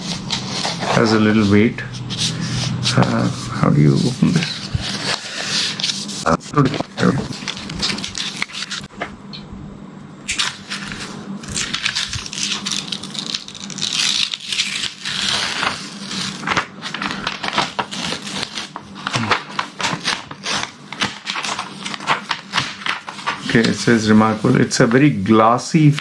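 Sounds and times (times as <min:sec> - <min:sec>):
packaging rustling and crackling: 0:03.9 - 0:08.9, 0:10.3 - 0:25.0.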